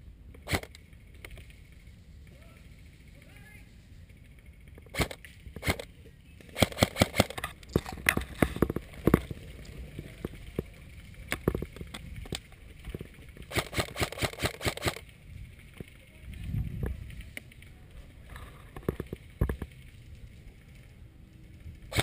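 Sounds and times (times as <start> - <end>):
airsoft gun shots: 0.4 - 0.8, 4.9 - 5.9, 6.6 - 7.5, 13.5 - 15.0.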